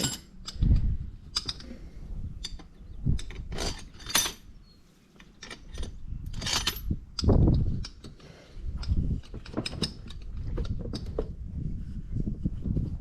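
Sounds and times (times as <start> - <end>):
metal parts clinking and scraping: 0.0 - 1.8, 2.4 - 4.6, 5.2 - 8.2.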